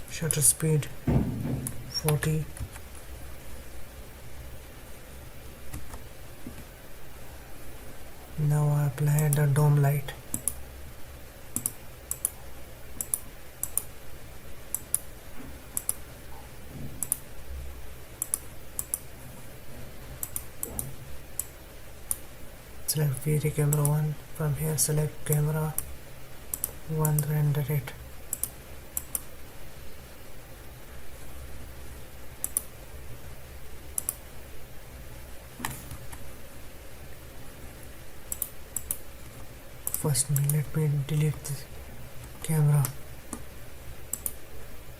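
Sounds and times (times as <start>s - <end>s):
low steady hum: 0.0s - 44.9s
computer mouse clicking: 5.7s - 6.6s, 10.3s - 10.6s, 11.5s - 12.4s, 13.0s - 13.9s, 14.7s - 15.1s, 15.8s - 16.0s, 17.0s - 17.3s, 18.2s - 19.1s, 20.2s - 22.2s, 23.7s - 24.0s, 26.5s - 27.3s, 28.3s - 29.3s, 32.4s - 32.7s, 33.9s - 34.2s, 38.3s - 40.7s, 44.1s - 44.4s.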